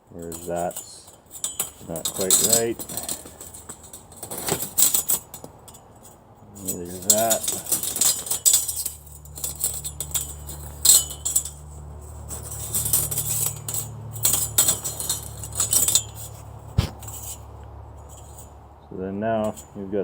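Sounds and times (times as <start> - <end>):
bandsaw blade clinking and rattling: 0.0 - 18.5, 19.4 - 20.0
low steady hum: 0.0 - 20.0
dull thump: 16.7 - 17.2.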